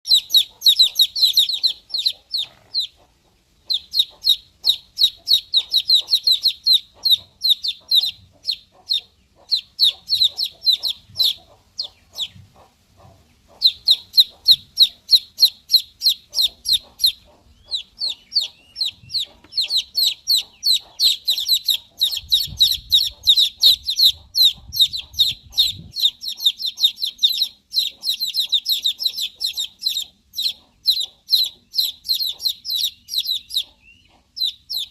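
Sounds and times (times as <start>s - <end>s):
baby chicks peeping: 0.0s - 34.9s.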